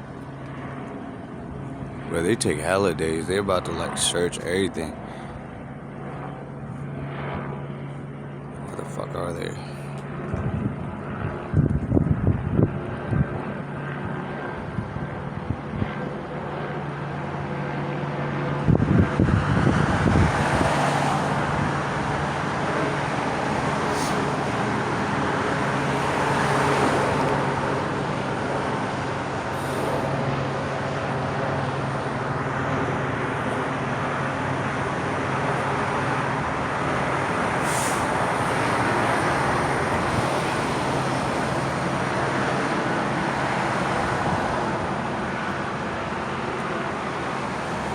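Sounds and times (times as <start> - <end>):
rushing traffic noise: 0.0 - 7.0, 16.9 - 47.9
engine running low hum: 0.0 - 47.9.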